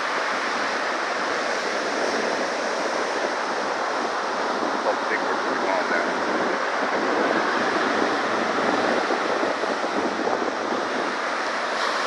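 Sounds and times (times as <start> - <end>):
waves breaking on beach: 0.0 - 12.0.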